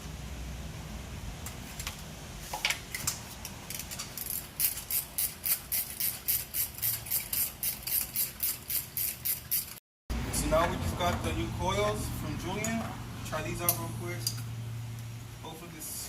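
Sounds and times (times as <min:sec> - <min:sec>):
socket ratchet clicking: 0:03.7 - 0:09.8.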